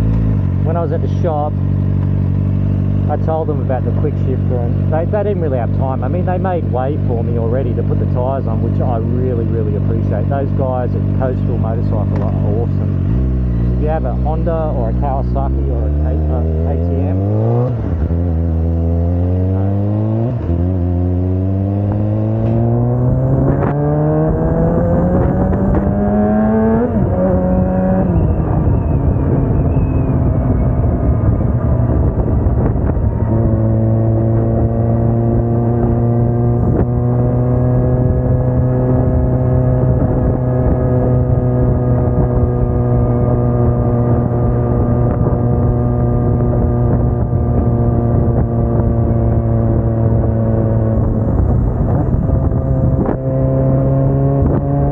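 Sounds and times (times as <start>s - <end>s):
motorcycle engine revving: 0.0s - 54.9s
wind rushing over microphone: 15.5s - 54.9s.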